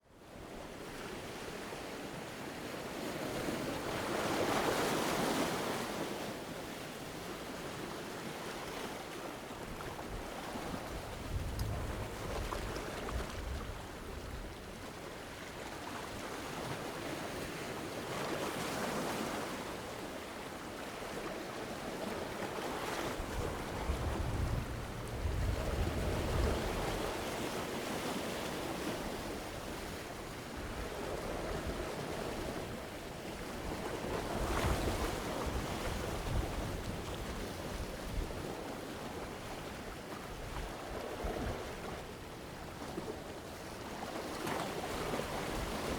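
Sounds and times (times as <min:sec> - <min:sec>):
low rumbling of surf: 0:00.2 - 0:45.9
ocean waves breaking on rocks: 0:00.8 - 0:45.9.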